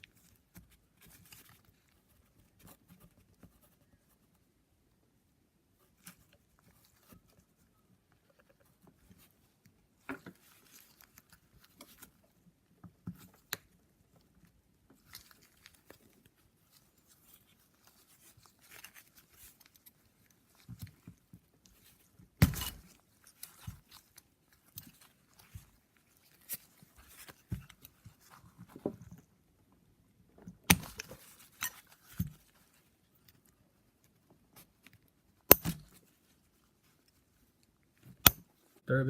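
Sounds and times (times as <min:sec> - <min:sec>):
hands handling metal parts: 0:30.5 - 0:38.6.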